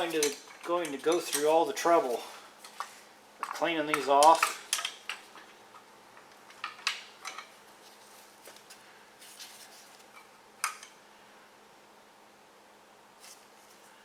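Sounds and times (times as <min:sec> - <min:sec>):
metal tools clinking: 0:00.0 - 0:02.8, 0:03.4 - 0:05.5
faint steady hum: 0:00.0 - 0:14.0.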